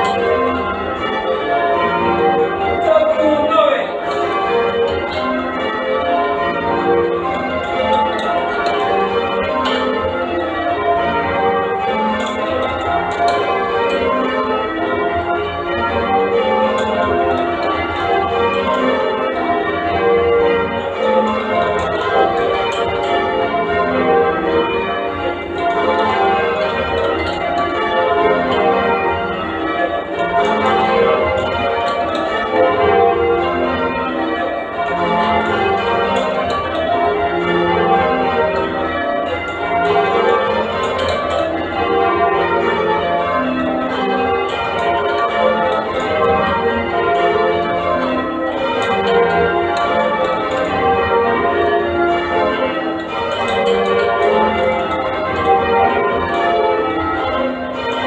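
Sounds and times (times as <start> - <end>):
church bells change ringing: 0.0 - 58.0.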